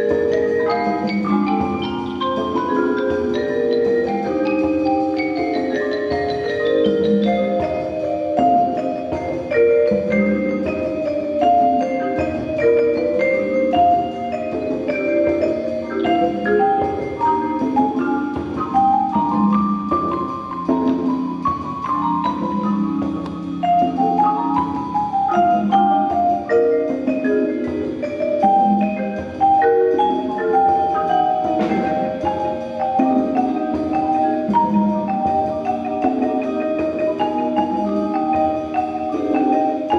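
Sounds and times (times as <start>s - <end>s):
marimbas playing: 0.0s - 39.9s
percussion ensemble with mallet keyboards: 0.0s - 39.9s.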